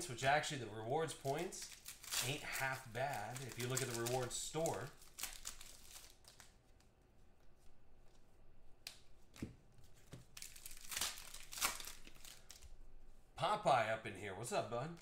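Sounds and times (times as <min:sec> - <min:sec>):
wrapper ripping and crinkling: 0:01.0 - 0:06.8, 0:10.3 - 0:12.7.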